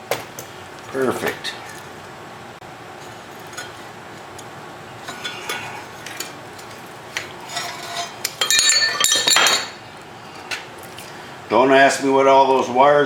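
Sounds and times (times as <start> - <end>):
metal bolts clicking and clinking: 7.5 - 9.8.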